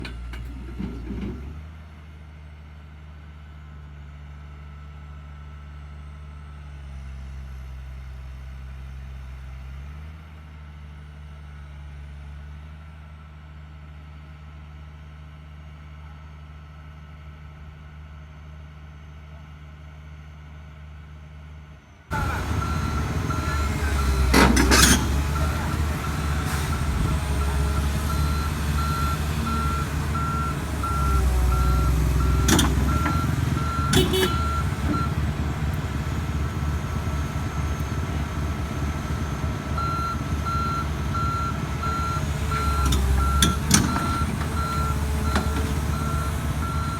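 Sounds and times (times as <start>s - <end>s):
heavy machine diesel engine: 0.0s - 46.9s
reversing alarm beeping: 22.1s - 35.2s, 38.8s - 46.9s.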